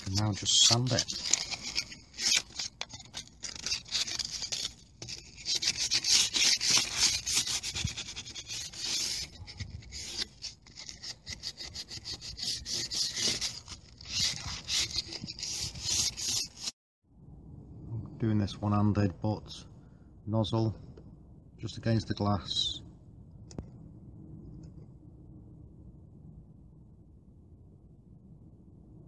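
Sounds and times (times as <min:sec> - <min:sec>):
sandpaper rubbing back and forth: 0:00.0 - 0:16.8.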